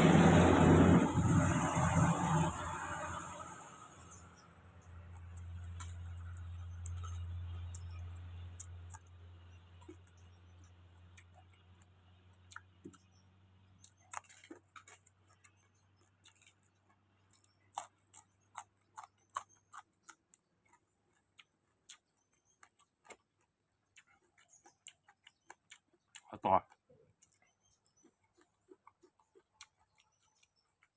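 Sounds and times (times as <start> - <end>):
low hum: 0.0 - 12.2.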